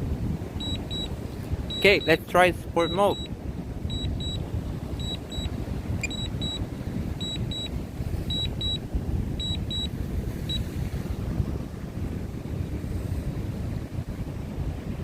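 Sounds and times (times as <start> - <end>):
wind buffeting microphone: 0.0 - 15.0
high double beep: 0.6 - 1.1, 1.7 - 3.3, 3.9 - 4.4, 5.0 - 6.6, 7.2 - 7.7.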